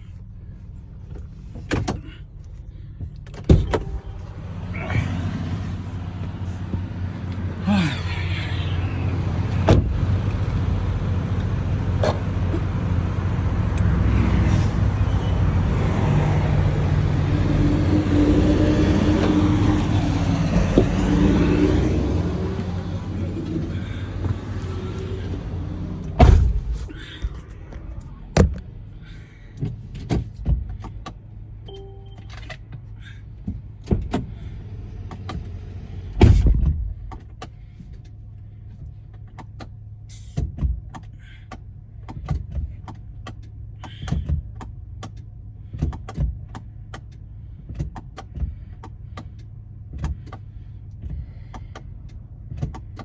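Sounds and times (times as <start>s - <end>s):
vehicle low hum: 0.0s - 53.0s.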